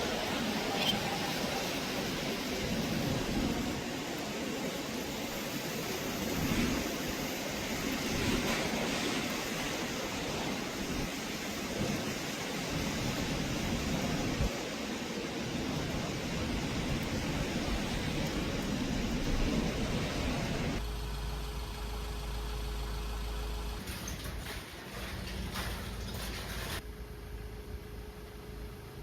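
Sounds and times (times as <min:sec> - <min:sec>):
wind gusts buffeting microphone: 0:00.0 - 0:20.8
wind and rain rushing: 0:00.0 - 0:22.3.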